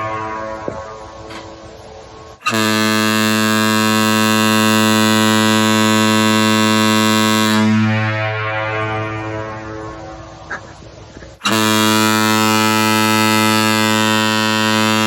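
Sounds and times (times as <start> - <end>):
deep ship's air horn blast: 2.4 - 10.4, 11.4 - 15.0.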